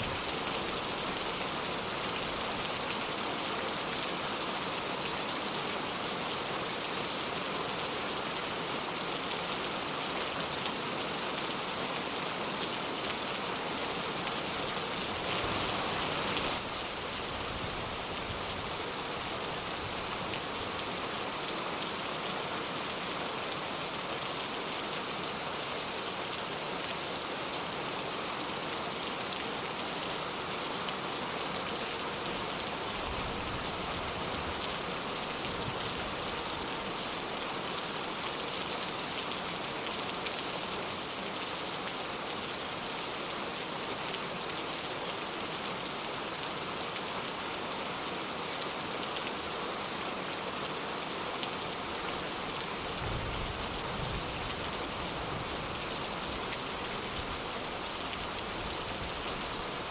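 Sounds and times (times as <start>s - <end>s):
rain pattering: 51.0s - 59.9s.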